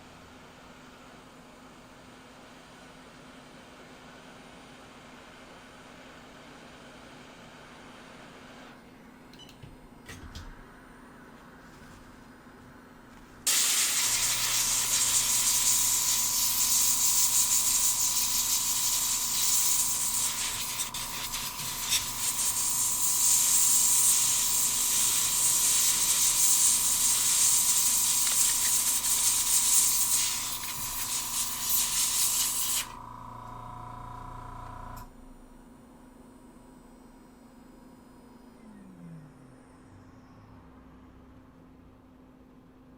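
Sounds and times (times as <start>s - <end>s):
cleaner spray hissing: 13.5s - 33.0s.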